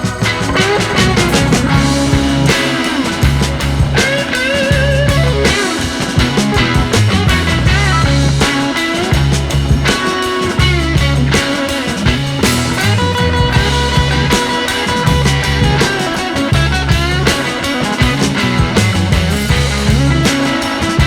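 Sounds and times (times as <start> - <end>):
rock music with guitar and drums: 0.0 - 21.0.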